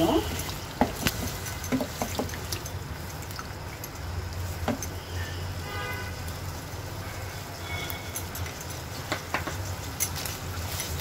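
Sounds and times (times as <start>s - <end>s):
wet squishy stirring in pan: 0.0s - 5.4s, 6.2s - 11.0s.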